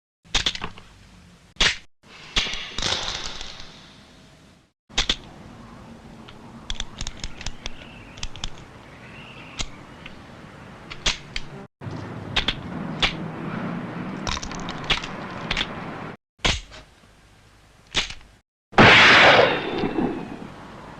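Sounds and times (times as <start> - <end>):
sharp cracks and hits: 1.6 - 4.0, 4.9 - 5.3, 12.4 - 13.2, 16.4 - 16.8, 17.9 - 20.4
low background hiss: 16.9 - 17.9.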